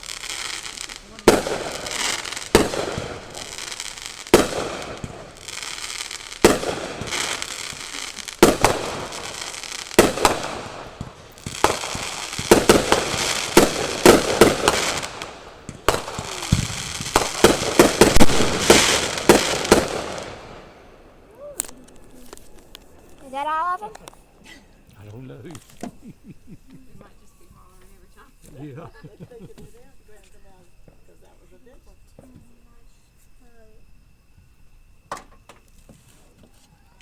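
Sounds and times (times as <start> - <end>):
fireworks bangs and crackling: 0.0 - 24.4.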